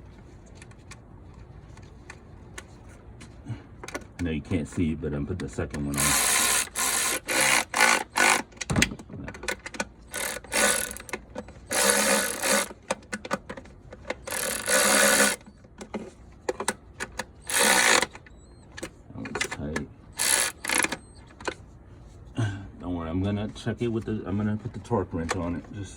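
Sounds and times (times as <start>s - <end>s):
ratchet wrench clicking: 5.9s - 8.5s, 10.1s - 12.8s, 14.2s - 15.4s, 17.4s - 18.2s, 20.2s - 21.0s.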